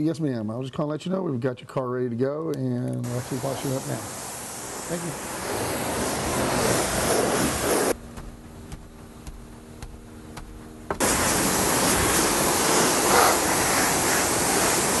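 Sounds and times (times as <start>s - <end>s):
low hum: 5.6s - 12.8s
loud steady rushing noise: 11.0s - 15.0s.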